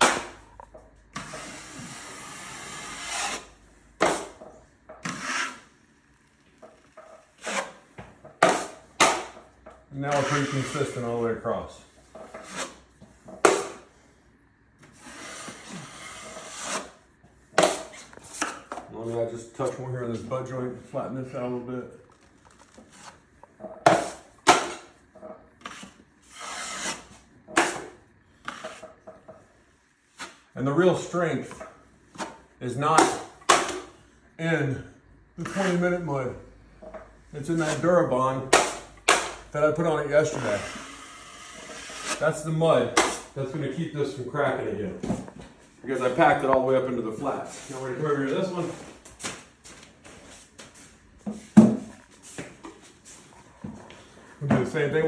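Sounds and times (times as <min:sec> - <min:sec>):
drywall knife scraping compound: 0:01.1 - 0:04.4, 0:05.0 - 0:05.8, 0:06.6 - 0:09.4, 0:10.0 - 0:11.2, 0:12.1 - 0:13.9, 0:14.8 - 0:17.0, 0:17.6 - 0:20.5, 0:22.8 - 0:25.0, 0:25.6 - 0:29.0, 0:30.1 - 0:33.9, 0:35.4 - 0:36.0, 0:37.4 - 0:43.5.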